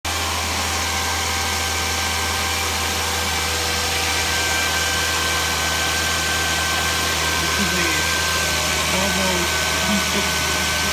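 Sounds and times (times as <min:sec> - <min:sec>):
car engine idling: 0:02.8 - 0:10.9
thin steady whine: 0:03.2 - 0:10.9.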